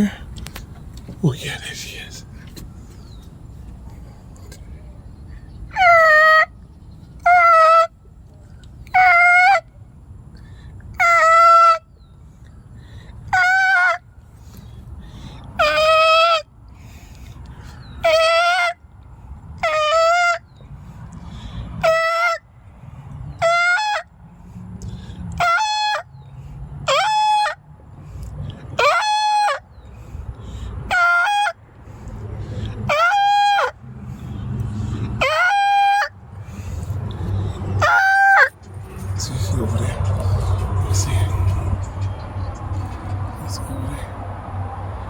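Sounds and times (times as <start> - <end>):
loud honking bird call: 5.7 - 6.6, 7.2 - 8.0, 8.9 - 9.6, 11.0 - 11.9, 13.3 - 14.0, 15.6 - 16.4, 18.0 - 18.8, 25.4 - 26.1, 26.9 - 27.6, 28.8 - 29.7, 30.9 - 31.6, 32.9 - 33.8, 35.2 - 36.8, 37.7 - 38.6.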